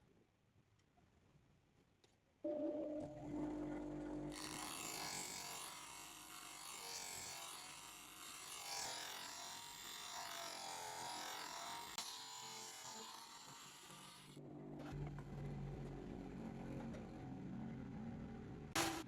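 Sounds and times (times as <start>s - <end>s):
low hum: 2.5s - 4.4s.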